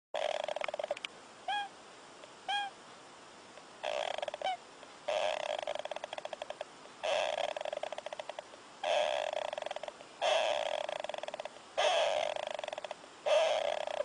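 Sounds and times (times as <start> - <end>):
animal snoring: 0.2 - 1.0, 3.8 - 14.0
high squeaks: 3.8 - 14.0.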